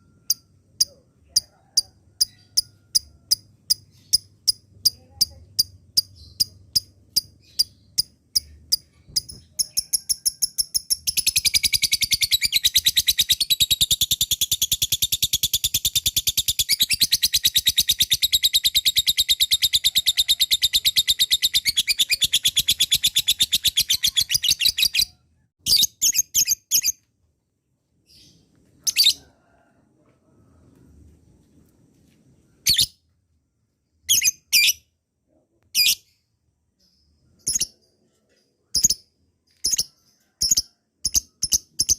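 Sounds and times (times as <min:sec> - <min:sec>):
lovebird chirping rapidly: 0:02.2 - 0:27.0, 0:32.6 - 0:33.0, 0:34.1 - 0:34.9, 0:35.8 - 0:36.2, 0:36.9 - 0:37.9, 0:38.7 - 0:41.9.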